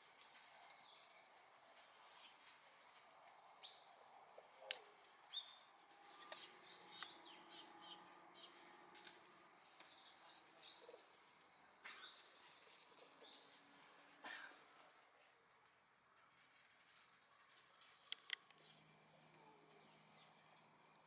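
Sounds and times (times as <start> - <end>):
small birds chirping: 0.0 - 16.0, 16.9 - 21.0
sharp clicks: 18.1 - 18.6.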